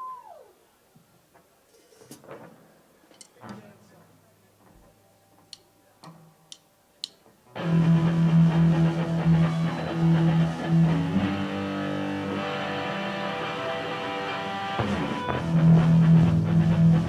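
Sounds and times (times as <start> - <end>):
electric guitar chords: 7.6 - 17.0.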